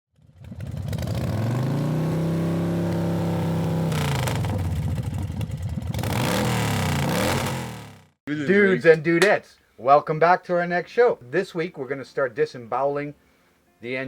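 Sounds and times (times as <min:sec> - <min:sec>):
motorcycle engine revving: 0:00.2 - 0:08.2.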